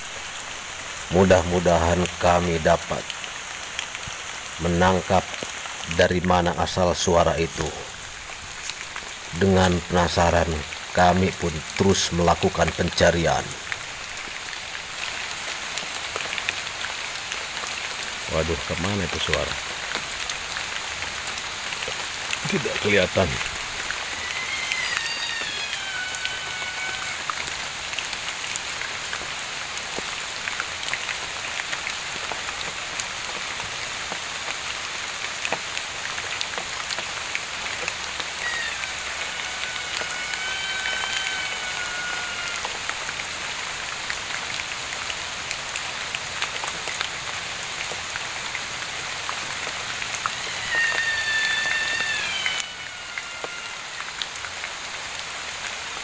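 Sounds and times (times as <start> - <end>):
steady rain: 0.0 - 56.0
animal wailing call: 22.3 - 28.1, 37.8 - 43.1, 50.0 - 54.6.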